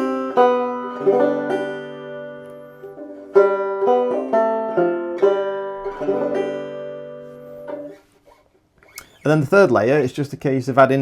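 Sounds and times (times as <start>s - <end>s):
banjo plucked notes: 0.0s - 8.2s.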